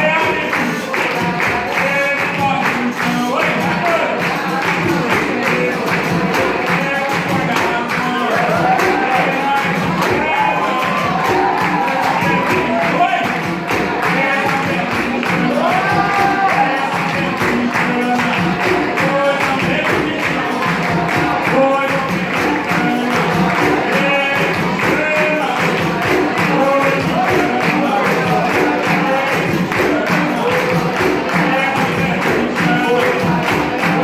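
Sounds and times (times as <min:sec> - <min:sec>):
group singing: 0:00.0 - 0:34.0
steady percussion: 0:00.0 - 0:34.0
tambourine jingling: 0:00.0 - 0:34.0.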